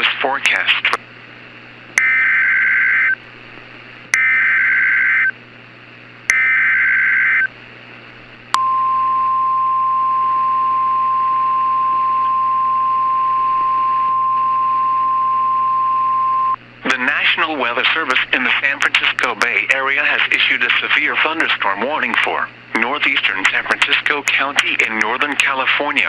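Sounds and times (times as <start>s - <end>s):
buzzing digital data tones: 2.0s - 3.2s, 4.2s - 5.4s, 6.3s - 7.5s
steady warning alarm tone: 2.0s - 3.2s, 4.2s - 5.3s, 6.3s - 7.5s.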